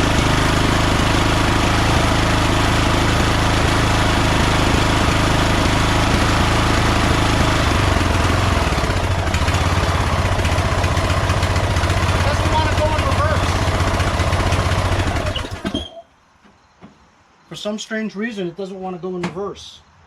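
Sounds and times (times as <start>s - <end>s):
lawn tractor engine running: 0.0s - 15.9s.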